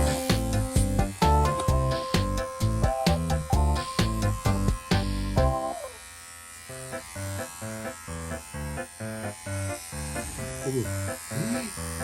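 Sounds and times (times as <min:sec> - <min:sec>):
cheerful background music: 0:00.0 - 0:05.7
electric clippers buzzing: 0:00.0 - 0:12.0.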